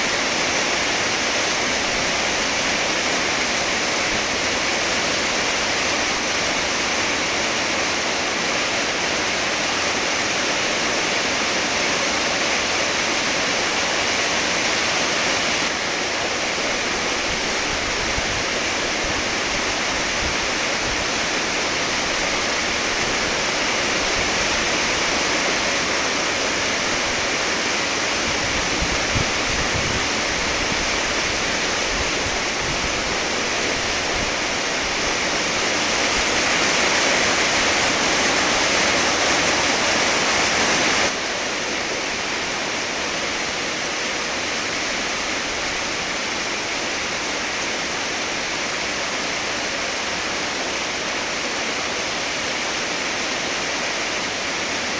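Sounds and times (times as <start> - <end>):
heavy rain falling: 0.0 - 42.8.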